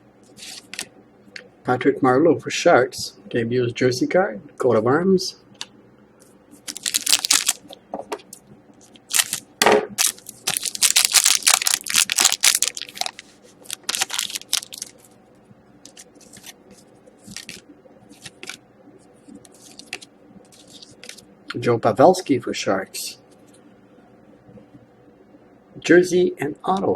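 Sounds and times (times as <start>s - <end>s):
cards and packaging rustling: 6.6s - 7.7s, 8.9s - 9.4s, 10.0s - 15.1s, 17.2s - 18.6s, 19.5s - 21.2s.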